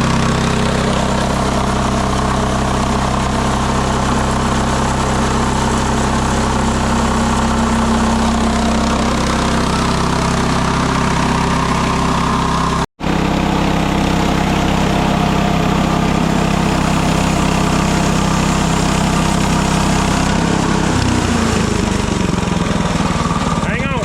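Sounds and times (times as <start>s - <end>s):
small gasoline engine running: 0.0s - 24.0s.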